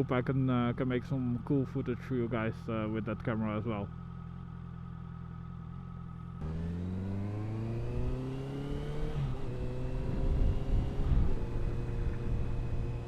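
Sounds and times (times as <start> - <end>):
motorcycle engine accelerating: 3.9 - 13.0.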